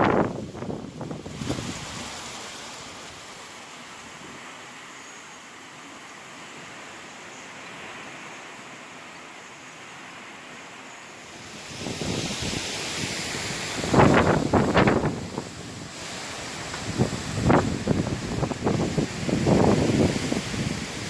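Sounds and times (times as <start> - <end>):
wind gusts buffeting microphone: 0.0 - 3.2, 11.4 - 21.0
wind rushing: 11.5 - 21.0.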